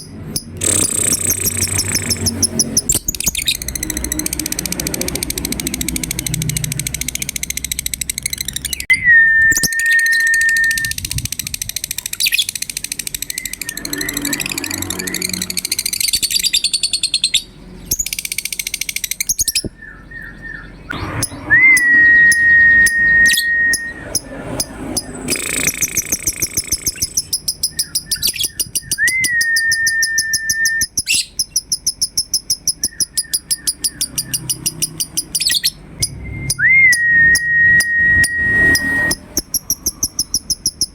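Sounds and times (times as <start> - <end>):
lovebirds chattering chirps: 0.0 - 8.9, 9.6 - 29.0, 29.8 - 36.2, 38.7 - 40.9
long steady whistled note: 8.9 - 10.9, 21.4 - 24.3, 36.1 - 39.2.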